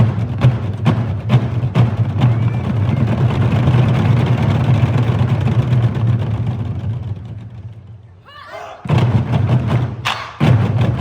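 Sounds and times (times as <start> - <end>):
rumbling drum roll: 0.0 - 8.1, 8.8 - 11.0
drums struck: 8.8 - 11.0.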